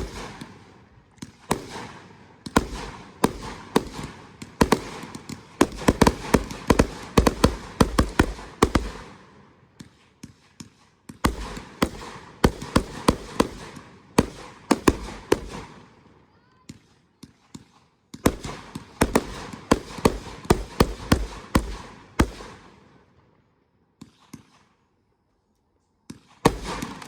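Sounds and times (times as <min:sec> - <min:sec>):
fireworks bangs and crackles: 0:00.0 - 0:22.8, 0:26.1 - 0:27.0.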